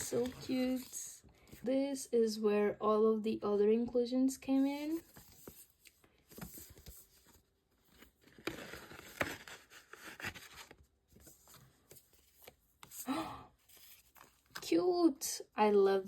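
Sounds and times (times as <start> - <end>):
paper and plastic rustling: 0.0 - 1.7, 13.6 - 14.8.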